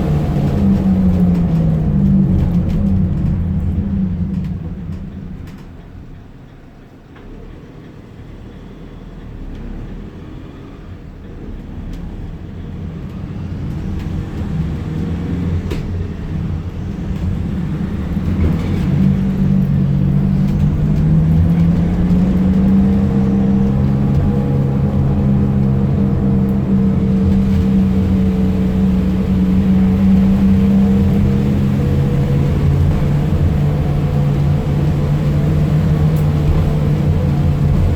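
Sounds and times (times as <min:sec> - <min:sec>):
diesel engine droning: 0:00.0 - 0:37.9.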